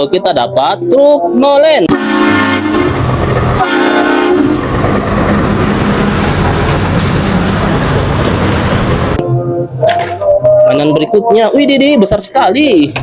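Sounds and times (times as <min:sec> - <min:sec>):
deep multi-tone horn blasts: 0:01.2 - 0:11.2
big vehicle engine rumble: 0:01.9 - 0:11.1.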